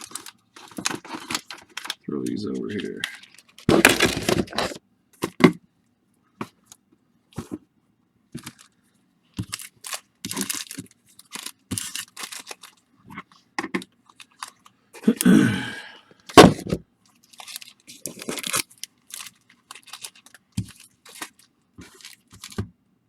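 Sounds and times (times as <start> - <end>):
card packs crinkling and slapping: 0.0 - 5.4, 8.4 - 8.8, 9.4 - 13.3, 14.1 - 15.3, 16.3 - 22.7.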